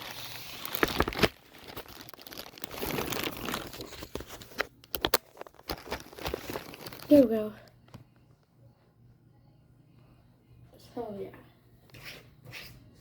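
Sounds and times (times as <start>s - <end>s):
laptop bag rustling: 0.0s - 7.3s.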